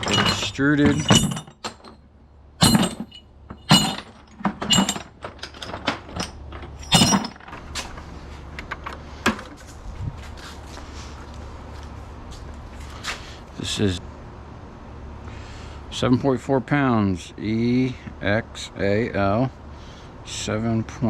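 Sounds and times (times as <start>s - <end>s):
aluminium scrap clanking: 0.0s - 8.1s
low steady hum: 0.0s - 21.0s.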